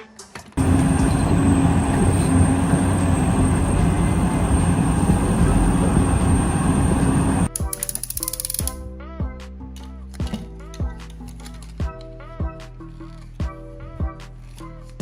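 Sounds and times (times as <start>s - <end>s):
model motor rumbling: 0.6s - 7.5s
thin high whine: 0.6s - 7.5s.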